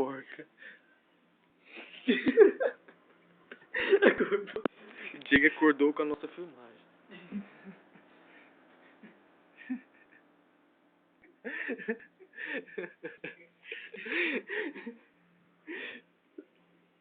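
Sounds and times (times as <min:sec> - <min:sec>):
people chuckling: 0:01.7 - 0:04.8, 0:07.1 - 0:08.1, 0:09.0 - 0:10.3, 0:11.2 - 0:15.1.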